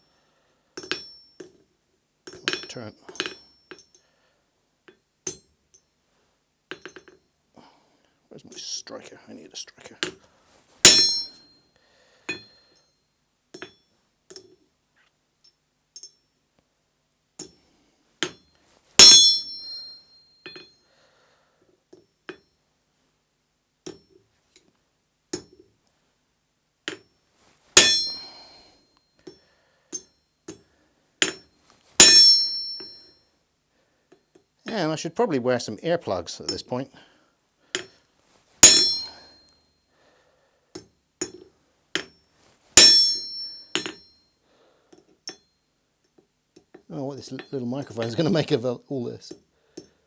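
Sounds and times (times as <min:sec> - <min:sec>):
light metallic taps and clinks: 0:00.8 - 0:04.1, 0:04.8 - 0:06.0, 0:06.7 - 0:07.3, 0:12.3 - 0:16.7, 0:17.4 - 0:17.6, 0:18.2 - 0:20.8, 0:21.7 - 0:22.6, 0:23.8 - 0:25.7, 0:26.8 - 0:27.2, 0:27.8 - 0:33.2, 0:37.7 - 0:38.0, 0:38.6 - 0:39.6, 0:40.7 - 0:44.3, 0:44.9 - 0:48.2
hammer striking steel: 0:10.9 - 0:11.4, 0:19.0 - 0:19.9, 0:27.8 - 0:28.5, 0:32.0 - 0:33.0, 0:38.6 - 0:39.4, 0:42.8 - 0:44.0.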